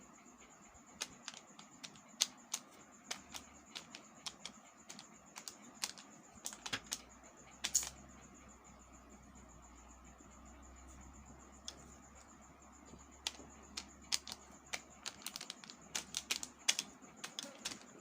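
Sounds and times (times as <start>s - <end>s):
candy buttons clicking: 0.9s - 8.0s, 13.2s - 18.0s
candy rattle: 1.0s - 7.9s, 13.2s - 18.0s.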